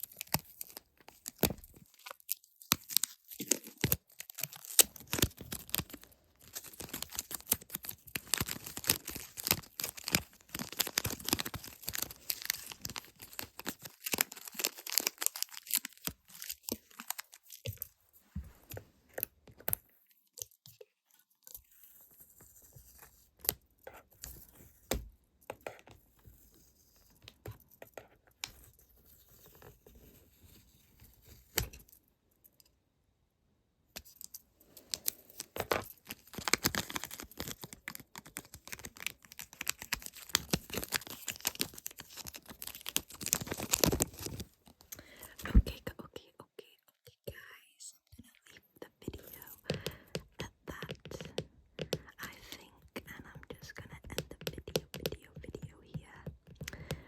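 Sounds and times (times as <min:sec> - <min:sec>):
stickers peeling and crinkling: 0:00.0 - 0:17.8, 0:34.9 - 0:44.8
sticky clicks and taps: 0:49.1 - 0:52.5, 0:53.2 - 0:57.0.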